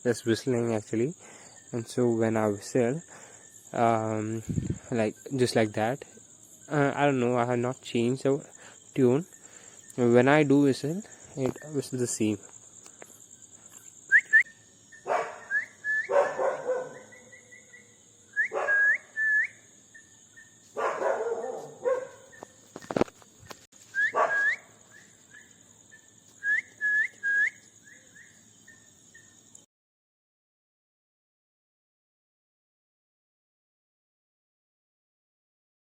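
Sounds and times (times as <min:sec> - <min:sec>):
cricket trill: 0:00.0 - 0:29.7
person whistling: 0:14.1 - 0:14.5, 0:15.5 - 0:16.1, 0:18.4 - 0:19.6, 0:23.9 - 0:24.6, 0:26.4 - 0:27.6
bird whistling: 0:14.1 - 0:20.6, 0:23.9 - 0:28.8
dog barking: 0:15.0 - 0:17.4, 0:18.5 - 0:18.9, 0:20.8 - 0:22.4, 0:24.1 - 0:24.7.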